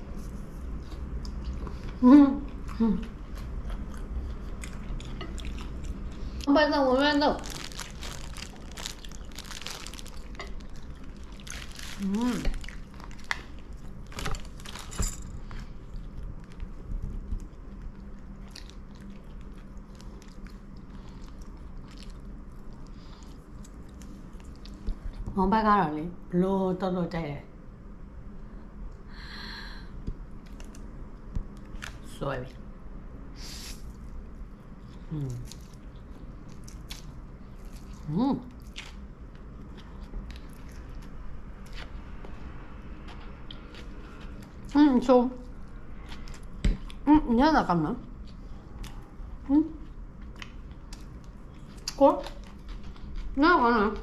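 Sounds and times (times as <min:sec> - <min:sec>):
voiced hum: 0:00.0 - 0:26.7
low background hum: 0:00.0 - 0:54.0
person chewing food: 0:00.2 - 0:06.5, 0:07.4 - 0:25.1, 0:48.2 - 0:53.4.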